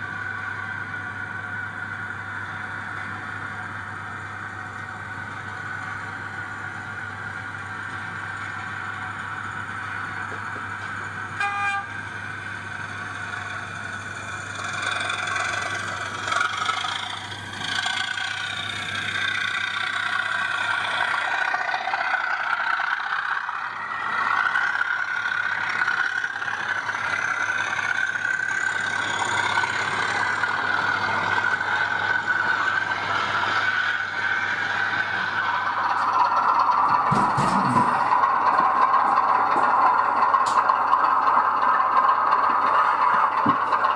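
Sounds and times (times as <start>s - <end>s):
model locomotive engine sound: 0.0s - 43.9s
short horn toot: 11.4s - 11.9s.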